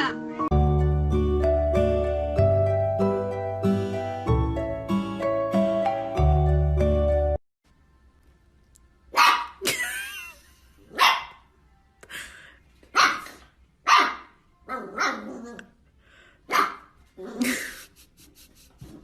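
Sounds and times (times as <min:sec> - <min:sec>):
dog barking: 0:09.1 - 0:09.6, 0:10.9 - 0:11.5, 0:12.9 - 0:15.4, 0:16.5 - 0:16.9.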